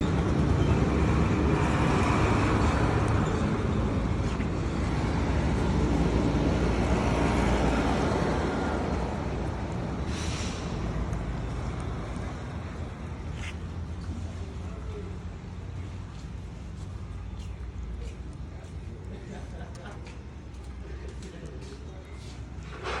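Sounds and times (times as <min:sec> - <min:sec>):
road vehicle noise: 0:00.0 - 0:23.0
brief hiss: 0:10.1 - 0:10.8.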